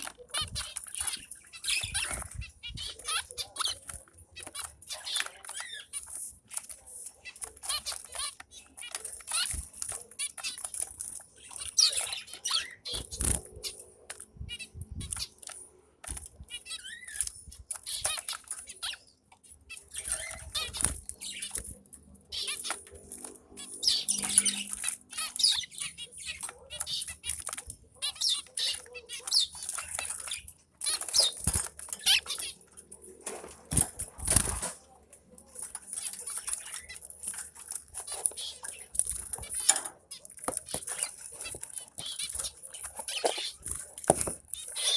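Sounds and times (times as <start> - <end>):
finches chirping: 0.0 - 44.9
wings fluttering: 11.7 - 19.0, 29.6 - 44.9.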